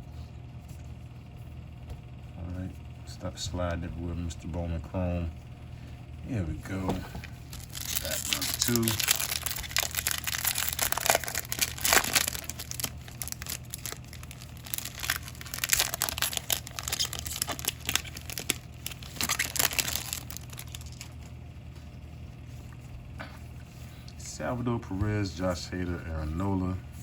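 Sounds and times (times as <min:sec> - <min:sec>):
foil wrapper tearing and crinkling: 0:07.2 - 0:21.3.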